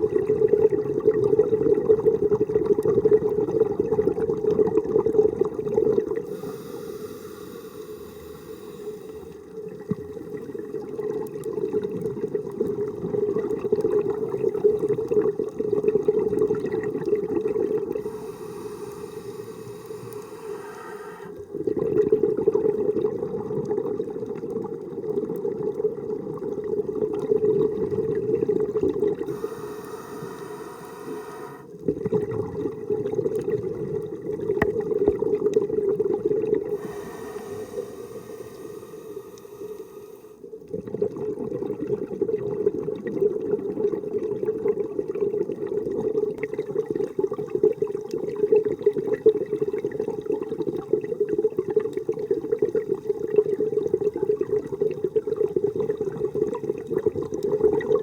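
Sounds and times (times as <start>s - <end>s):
rumbling bubbles from exhalation: 0.0s - 58.0s
hissing regulator inhalation: 6.2s - 9.5s, 17.9s - 21.6s, 29.2s - 31.8s, 36.7s - 40.4s.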